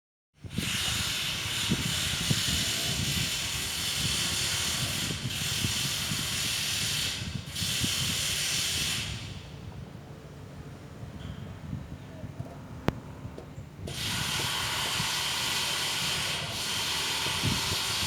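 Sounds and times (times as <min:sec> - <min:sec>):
loud steady hiss: 0:00.6 - 0:09.5, 0:13.9 - 0:18.0.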